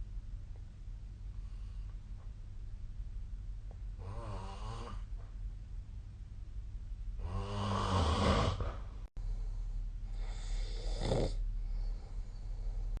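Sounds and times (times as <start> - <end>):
steady low hum: 0.0 - 13.0
person snoring: 4.0 - 5.1, 7.2 - 8.7, 10.1 - 12.9.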